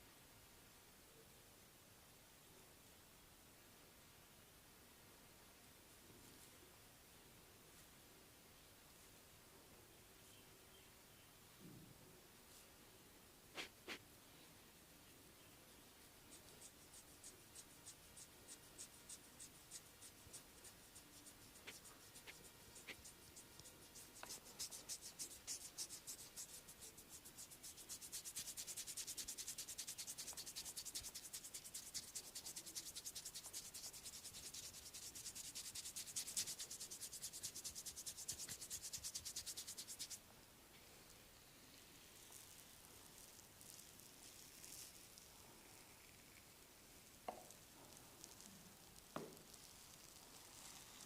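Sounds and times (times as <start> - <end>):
hand rubbing strokes: 13.5 - 14.4, 15.8 - 40.2.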